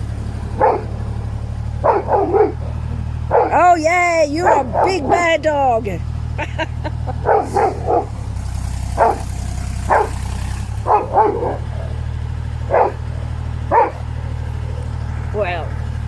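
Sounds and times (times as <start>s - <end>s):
excavator engine rumbling: 0.0s - 16.0s
dog barking: 0.5s - 3.8s, 4.4s - 5.3s, 7.2s - 8.3s, 8.9s - 14.9s.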